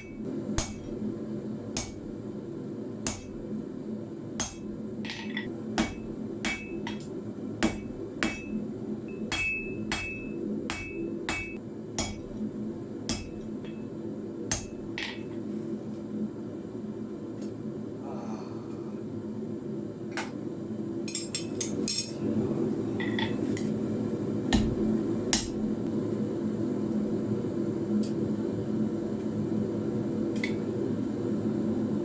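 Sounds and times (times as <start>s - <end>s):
hammer striking iron on anvil: 0.0s - 1.0s, 1.8s - 2.1s, 3.0s - 3.4s, 4.4s - 12.4s, 13.1s - 13.9s, 14.5s - 15.4s, 24.5s - 25.6s
low hum: 0.0s - 32.0s.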